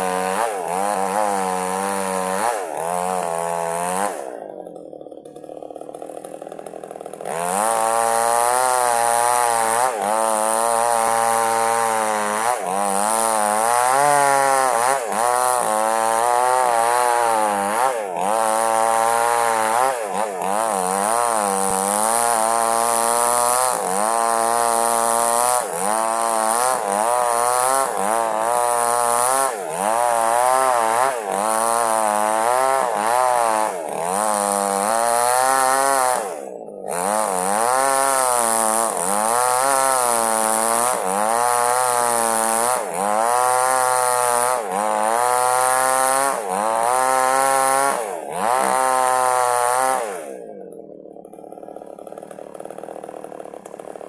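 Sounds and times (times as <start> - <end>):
chainsaw cutting log: 0.0 - 54.0.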